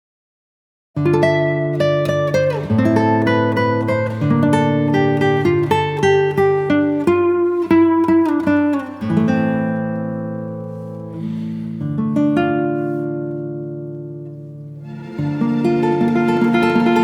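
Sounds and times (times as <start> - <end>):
acoustic guitar picking melody: 1.0 - 17.0.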